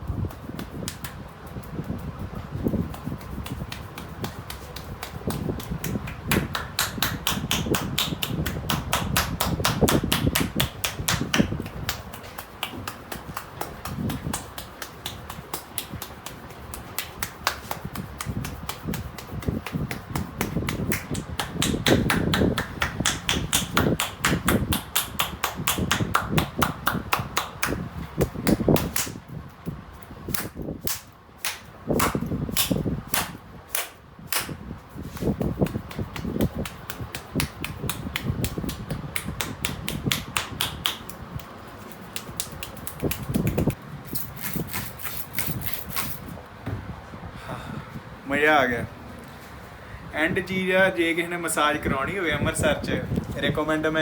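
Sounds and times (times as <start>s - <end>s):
hand slaps and taps massage: 0.1s - 29.2s, 30.3s - 43.8s
sharp hand claps: 0.2s - 1.2s, 2.7s - 29.2s, 30.3s - 43.8s.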